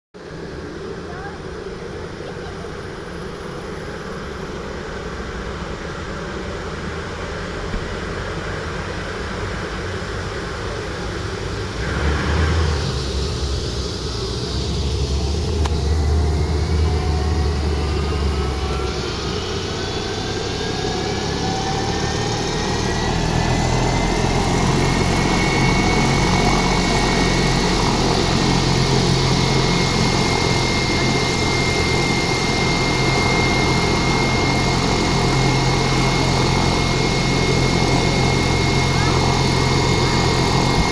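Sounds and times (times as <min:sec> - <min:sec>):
helicopter turbine whine: 0:00.2 - 0:40.9
low rumble: 0:11.3 - 0:31.6.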